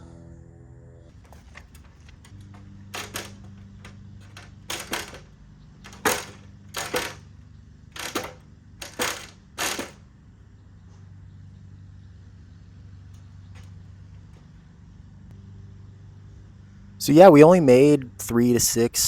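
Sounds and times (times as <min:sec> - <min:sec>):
metal hardware clinking: 0:01.2 - 0:07.3, 0:08.0 - 0:10.0.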